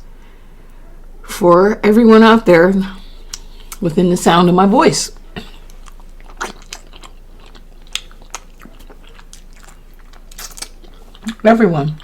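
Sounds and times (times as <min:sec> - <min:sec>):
mouth chewing food: 0:02.8 - 0:04.0, 0:05.1 - 0:12.0.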